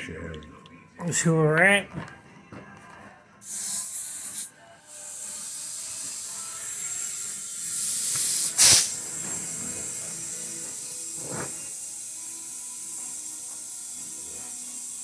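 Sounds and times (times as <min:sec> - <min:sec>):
compressed air hissing: 0:03.4 - 0:15.0.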